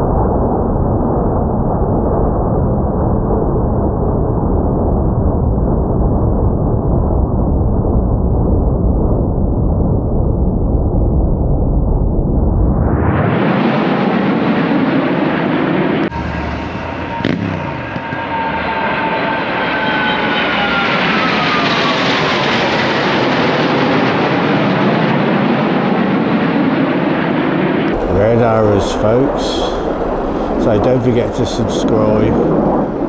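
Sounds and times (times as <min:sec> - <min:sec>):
jets flying past: 0:12.9 - 0:24.3, 0:27.9 - 0:33.0.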